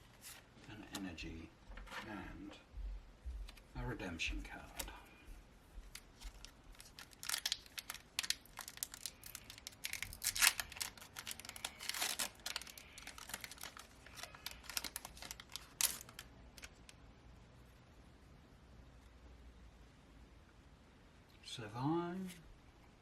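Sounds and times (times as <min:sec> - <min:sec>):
foil wrapper tearing and crinkling: 0:05.9 - 0:16.9.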